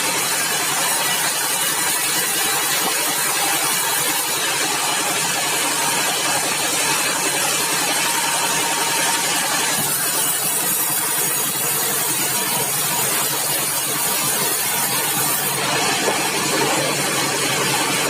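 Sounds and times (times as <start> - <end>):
sawmill machinery running: 0.0 - 18.0.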